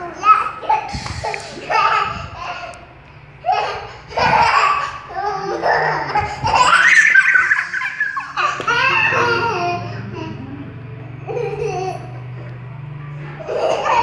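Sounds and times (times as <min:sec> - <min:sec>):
young child laughing: 0:00.4 - 0:02.9, 0:03.5 - 0:10.6, 0:13.4 - 0:14.0.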